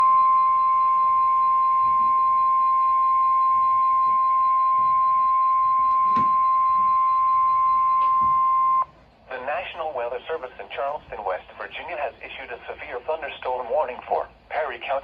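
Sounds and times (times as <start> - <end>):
steady alarm beep: 0.0 - 8.9.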